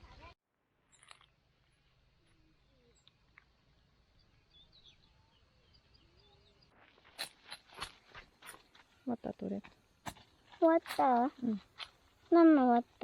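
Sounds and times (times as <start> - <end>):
bird chirps: 2.2 - 6.8.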